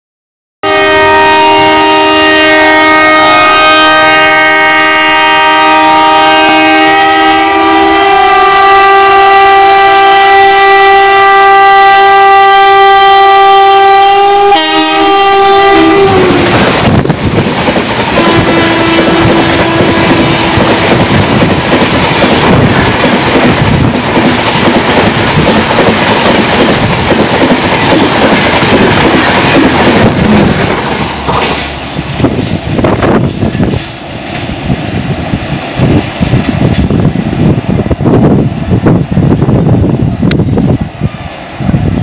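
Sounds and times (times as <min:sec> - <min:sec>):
locomotive twin-tone horn: 0:00.6 - 0:16.9, 0:18.2 - 0:21.0
train coaches rushing past: 0:14.6 - 0:42.0.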